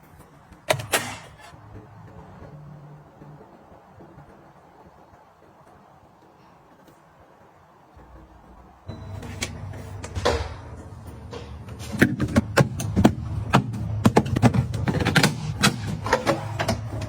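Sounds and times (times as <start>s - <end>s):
household items clicking and knocking: 11.2s - 17.0s.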